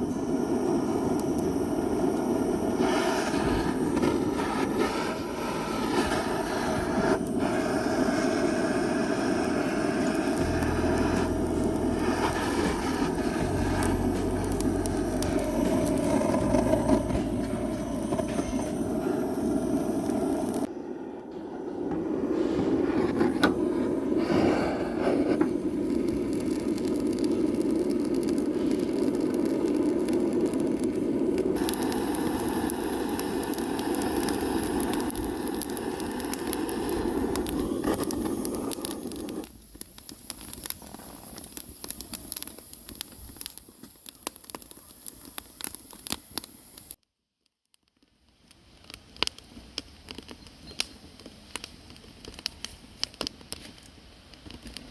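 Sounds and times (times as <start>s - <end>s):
gas torch hissing: 0.0s - 47.0s
wood fire crackling: 0.0s - 54.9s.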